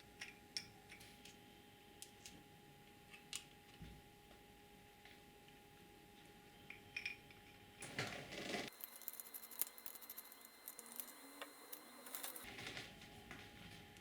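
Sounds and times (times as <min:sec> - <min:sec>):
small hard parts clicking: 0:08.7 - 0:12.5.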